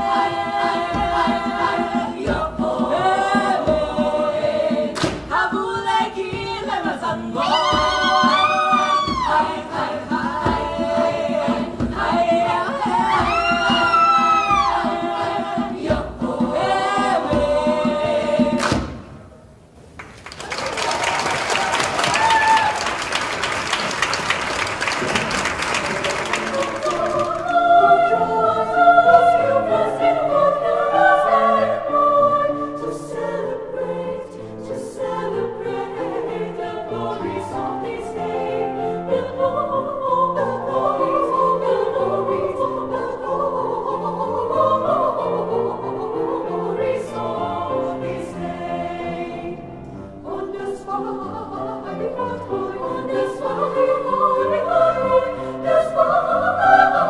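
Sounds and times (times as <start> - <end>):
choir singing in harmony: 0.0 - 19.3, 22.7 - 57.0
audience applause: 20.0 - 27.5.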